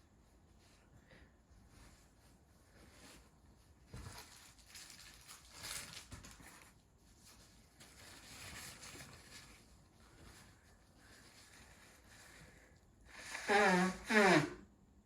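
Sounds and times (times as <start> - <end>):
woman blowing her nose: 13.1 - 14.6.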